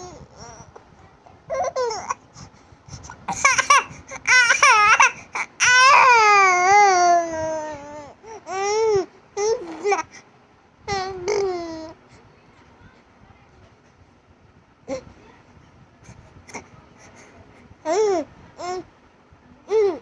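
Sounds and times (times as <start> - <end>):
baby babbling and crying: 3.3 - 10.1, 10.9 - 12.0.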